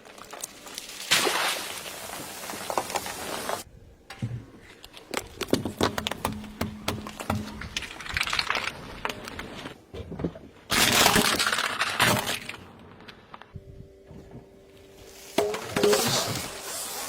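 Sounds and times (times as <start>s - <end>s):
objects cracking under car tyre: 0.0s - 3.6s, 4.7s - 13.6s.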